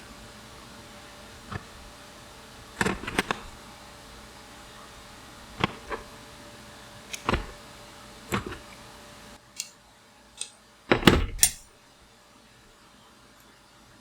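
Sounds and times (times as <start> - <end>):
tools and bike parts knocking: 10.9 - 11.7.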